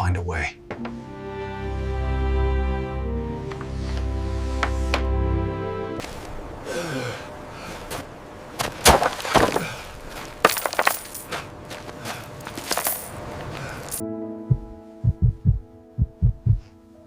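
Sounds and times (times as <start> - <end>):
sharp knocks and clattering impacts: 8.6 - 11.4.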